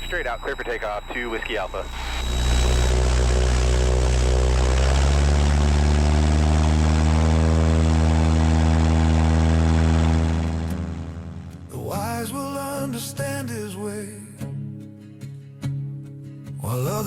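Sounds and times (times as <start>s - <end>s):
propeller plane engine at full power: 1.8s - 11.7s.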